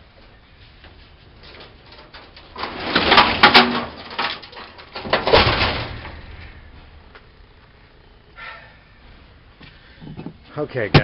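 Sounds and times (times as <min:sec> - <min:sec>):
metal machine scraping and banging: 0:01.9 - 0:06.6.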